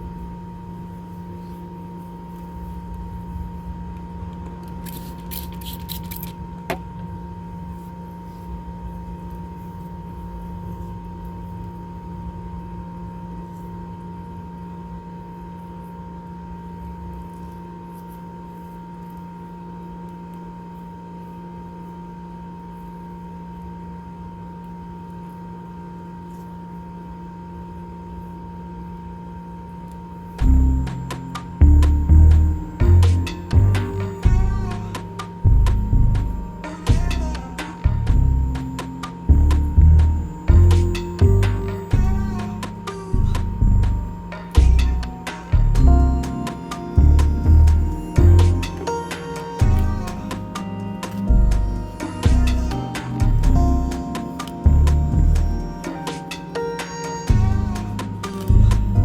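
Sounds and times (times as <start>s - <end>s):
crackling rustles: 0.0s - 59.0s
two-tone steady hum: 0.0s - 59.0s
low rumble: 30.4s - 49.0s, 49.6s - 55.9s, 57.3s - 59.0s.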